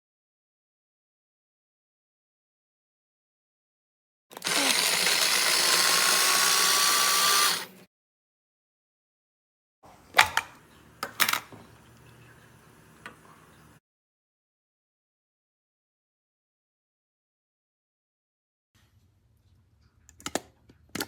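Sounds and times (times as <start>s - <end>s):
electric food chopper motor: 4.3s - 7.9s.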